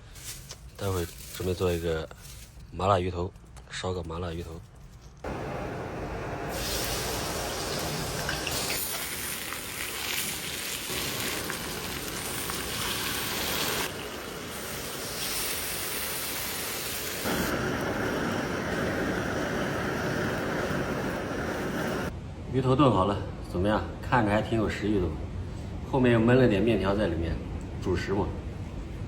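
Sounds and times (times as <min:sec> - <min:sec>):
fish sizzling in a pan: 0:06.5 - 0:19.5.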